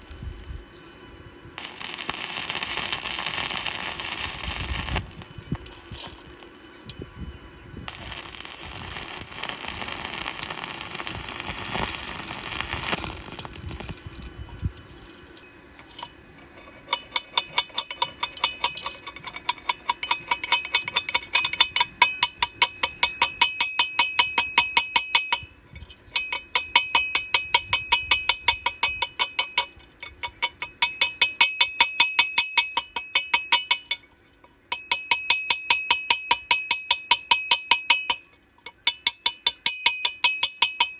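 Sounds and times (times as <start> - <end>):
welding arc crackling and hissing: 1.6 - 6.8, 7.9 - 15.2
chipping hammer tapping metal: 1.6 - 7.0, 7.9 - 34.1, 34.7 - 40.9.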